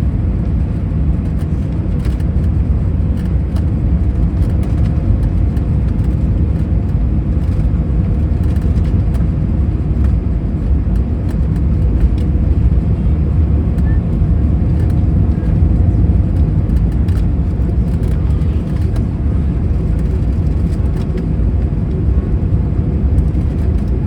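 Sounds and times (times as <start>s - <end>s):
airliner cabin rumble: 0.0s - 24.0s.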